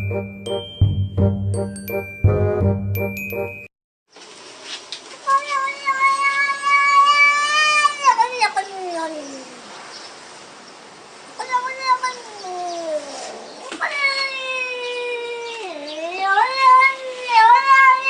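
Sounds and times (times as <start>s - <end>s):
cat yowling: 5.3s - 9.7s, 11.4s - 18.0s.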